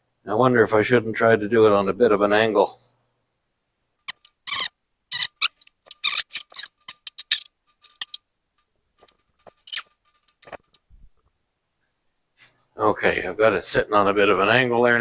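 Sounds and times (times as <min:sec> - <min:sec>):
metal clinking and knocking: 0:04.0 - 0:10.9.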